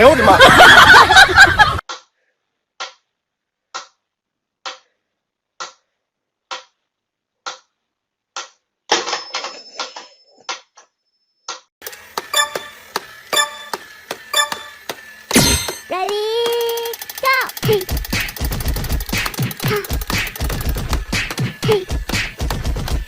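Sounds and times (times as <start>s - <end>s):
sharp evenly spaced clicks: 11.8s - 23.0s
irregular clicking and rattling: 15.8s - 21.6s.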